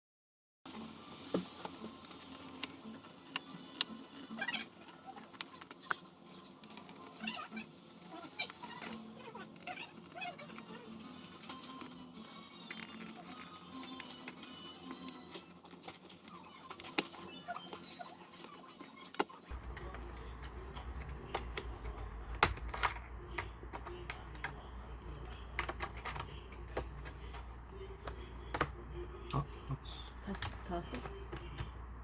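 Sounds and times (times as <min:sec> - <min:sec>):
hands clicking and tapping on laptop: 0:19.2 - 0:24.6, 0:25.2 - 0:27.4.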